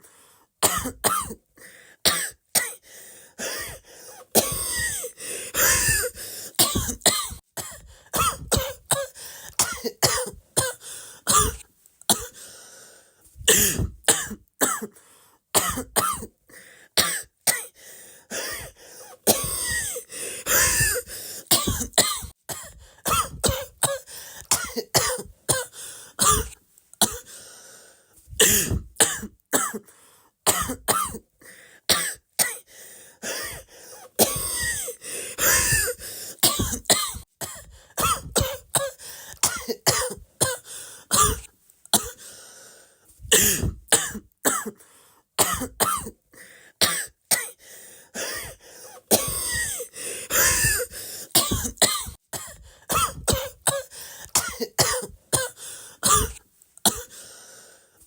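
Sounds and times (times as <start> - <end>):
person coughing: 0.6 - 1.4, 3.4 - 12.4, 13.4 - 15.0, 15.6 - 16.4, 17.0 - 27.3, 28.4 - 29.9, 30.5 - 31.3, 31.9 - 42.3, 43.3 - 44.8, 45.4 - 46.2, 48.2 - 57.2
throat clearing: 4.4 - 8.8, 19.3 - 23.7, 28.4 - 29.8, 34.2 - 38.7, 43.3 - 44.8, 49.2 - 53.6.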